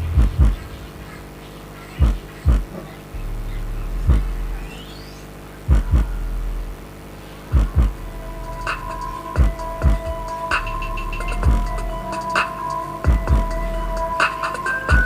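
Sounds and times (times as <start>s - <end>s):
bass-heavy electronic music: 0.0s - 1.4s, 2.0s - 15.0s.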